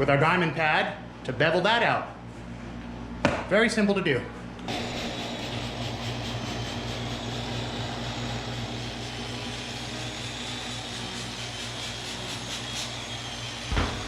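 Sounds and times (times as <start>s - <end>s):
power polisher whining: 4.7s - 14.0s.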